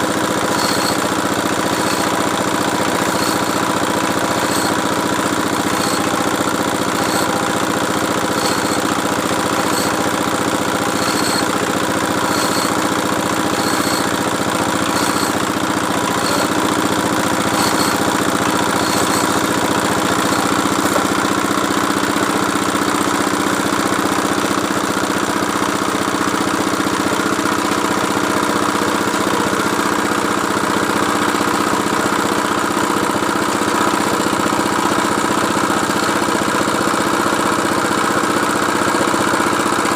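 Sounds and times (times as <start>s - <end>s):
drilling machine engine running: 0.0s - 23.8s, 33.6s - 37.4s.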